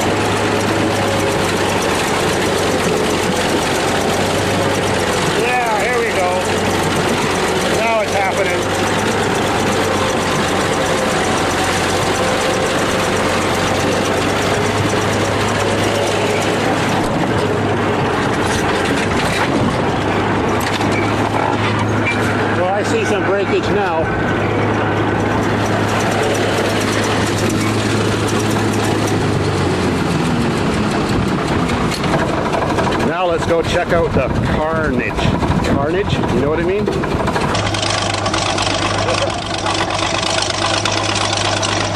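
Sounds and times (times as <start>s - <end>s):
fine rapid ticking: 0.0s - 19.8s, 25.0s - 29.6s, 34.9s - 41.9s
bulldozer engine running: 0.0s - 41.9s.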